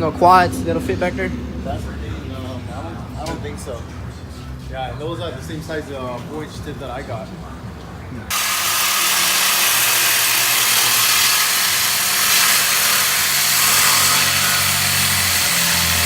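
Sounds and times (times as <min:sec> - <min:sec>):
power cutting tool hissing: 0:08.3 - 0:16.0.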